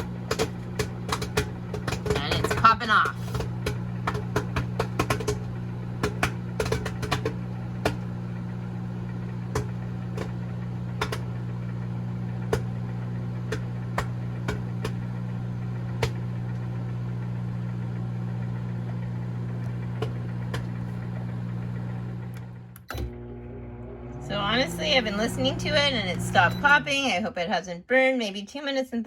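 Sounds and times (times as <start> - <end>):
popcorn popping: 0.0 - 23.0
microwave oven humming: 0.0 - 27.4.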